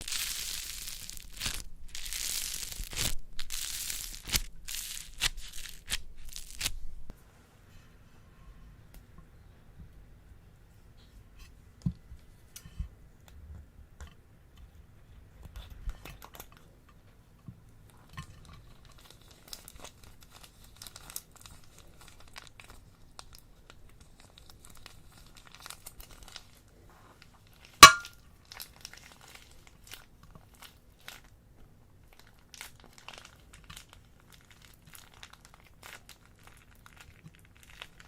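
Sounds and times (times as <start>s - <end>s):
plastic bags crinkling: 0.0s - 7.0s, 32.1s - 38.0s.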